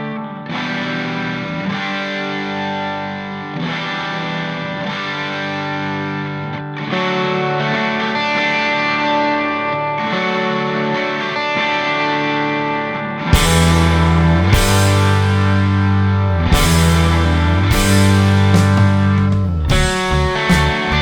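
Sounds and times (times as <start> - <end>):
distorted electric guitar chords: 0.0 - 21.0.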